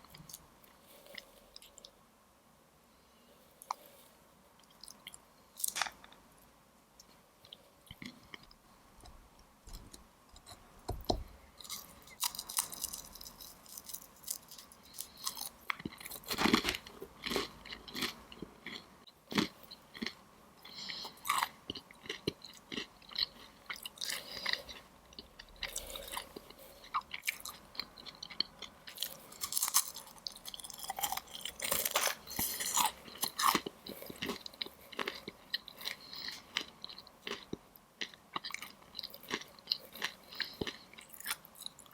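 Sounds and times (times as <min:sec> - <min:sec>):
chewing and crunching: 0:11.6 - 0:41.9.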